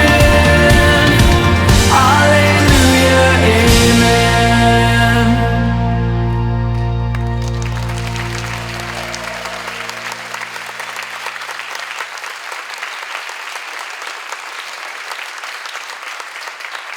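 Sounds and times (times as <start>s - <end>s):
held chord of worship song: 0.0s - 11.3s
congregation applauding: 0.0s - 16.9s.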